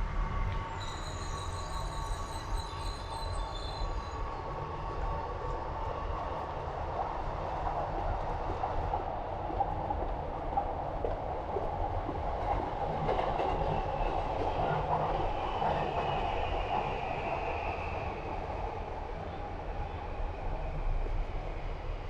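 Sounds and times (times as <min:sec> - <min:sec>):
train rumbling: 0:00.0 - 0:22.0
train wheels squealing: 0:00.3 - 0:05.2, 0:13.4 - 0:22.0.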